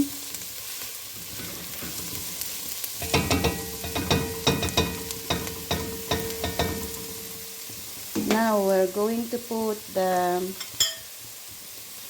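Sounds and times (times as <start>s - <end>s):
vegetables sizzling in a pan: 0.0s - 12.0s
utensil scraping a pan: 1.2s - 8.4s.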